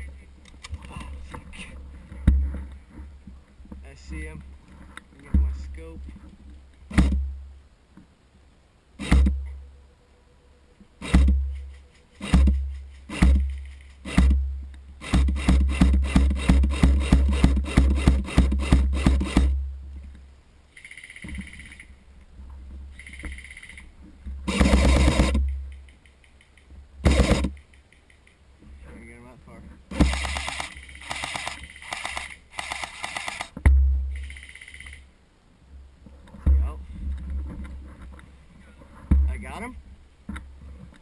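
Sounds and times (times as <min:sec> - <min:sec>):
airsoft rifle shots: 0:06.9 - 0:07.2, 0:09.0 - 0:09.4, 0:11.0 - 0:14.4, 0:15.0 - 0:19.6, 0:24.5 - 0:25.6, 0:27.0 - 0:27.7, 0:29.9 - 0:35.0.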